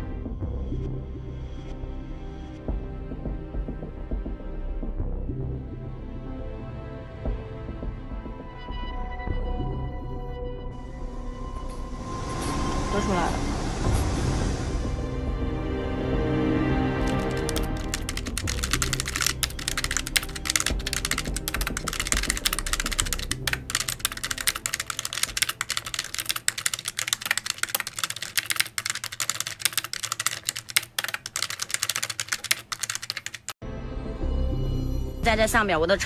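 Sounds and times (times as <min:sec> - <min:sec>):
rapid irregular clicking: 0:17.0 - 0:33.6.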